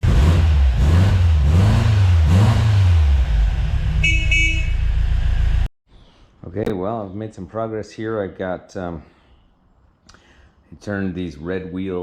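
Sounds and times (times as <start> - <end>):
car horn toots: 3.9 - 5.1.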